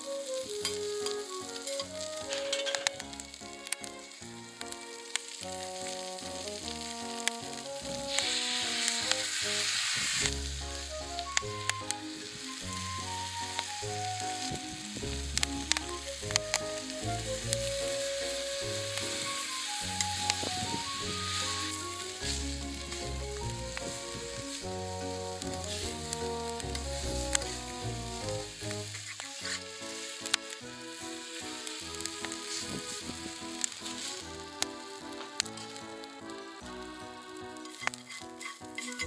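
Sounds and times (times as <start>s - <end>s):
noodles sizzling in a pan: 0.0s - 39.0s
background music with bass line: 10.2s - 29.1s.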